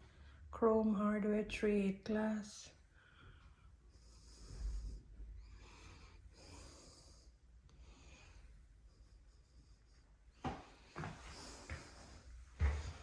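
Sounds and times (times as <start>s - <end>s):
soft breathing: 2.7s - 13.0s.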